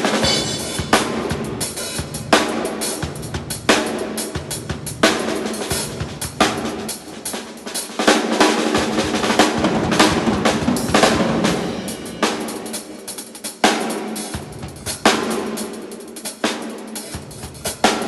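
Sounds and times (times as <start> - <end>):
ringing cymbals: 0.0 - 3.3.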